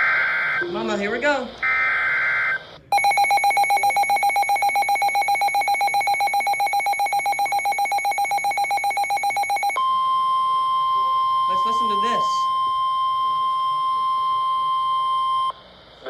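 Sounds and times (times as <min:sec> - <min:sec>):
data burst: 0:00.0 - 0:09.8
rapid electronic alert beeping: 0:00.0 - 0:15.6
steady alarm tone: 0:00.0 - 0:16.0.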